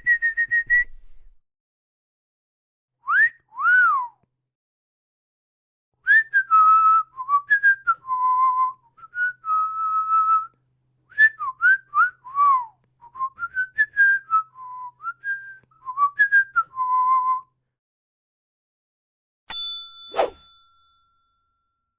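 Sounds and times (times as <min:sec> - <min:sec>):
man whistling a melody: 0:00.0 - 0:01.0, 0:03.0 - 0:04.2, 0:06.0 - 0:10.5, 0:11.1 - 0:17.6
bell-like ding: 0:19.5 - 0:21.9.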